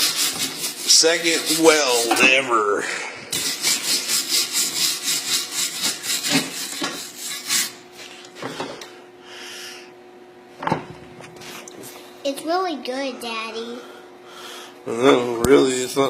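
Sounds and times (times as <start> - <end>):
wire brush scrubbing steel: 0.0 - 2.1, 3.3 - 7.8.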